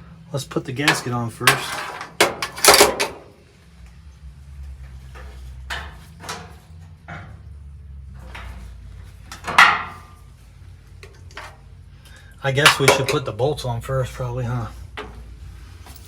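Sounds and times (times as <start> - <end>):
low steady hum: 0.0 - 16.0
metal parts clinking: 0.8 - 3.3.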